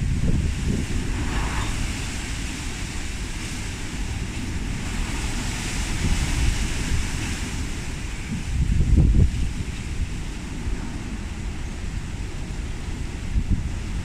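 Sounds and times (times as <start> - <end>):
strong wind rushing: 0.0 - 14.0
wind buffeting microphone: 0.0 - 14.0.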